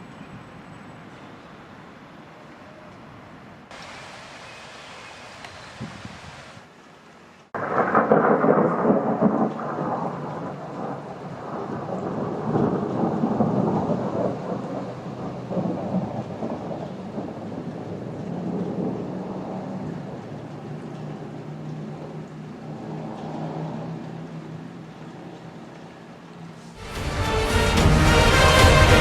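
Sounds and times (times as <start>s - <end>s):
rain falling: 0.0s - 29.0s
thunder rumbling: 7.6s - 20.4s, 26.6s - 29.0s.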